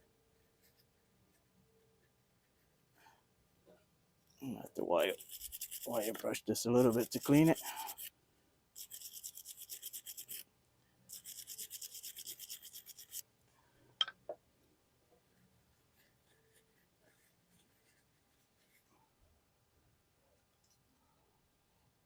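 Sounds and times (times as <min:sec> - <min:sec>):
wire brush scrubbing metal: 0:04.7 - 0:08.1, 0:08.8 - 0:10.4, 0:11.1 - 0:13.2.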